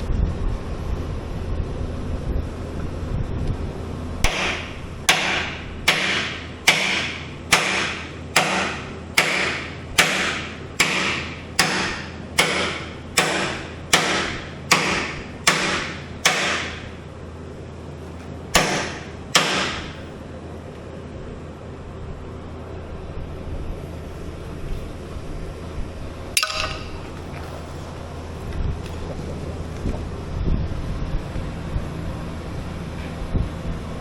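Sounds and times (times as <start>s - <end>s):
hammer blows on metal: 4.2s - 16.9s, 18.5s - 20.0s, 26.4s - 27.2s.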